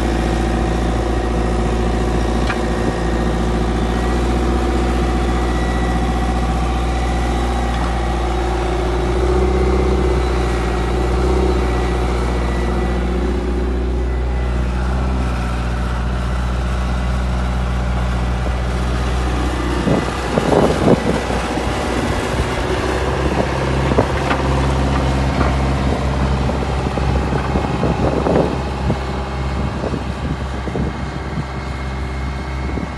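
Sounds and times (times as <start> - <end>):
diesel engine running: 0.0 - 32.9
rumbling gusts: 18.3 - 32.9.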